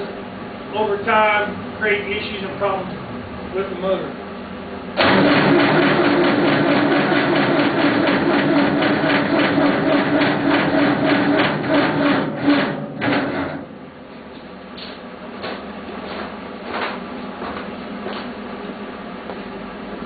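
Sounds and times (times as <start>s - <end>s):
diesel engine cranking: 5.0s - 13.8s.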